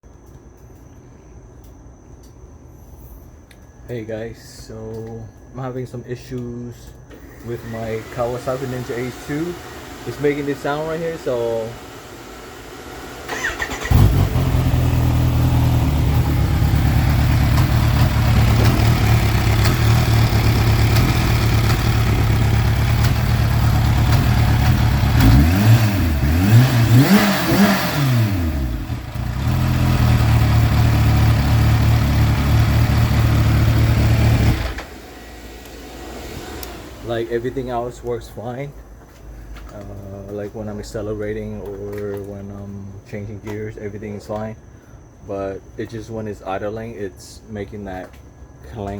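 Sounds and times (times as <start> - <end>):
motorcycle engine idling and revving: 8.0 - 37.4
rhythmic engine clanking: 13.3 - 25.8.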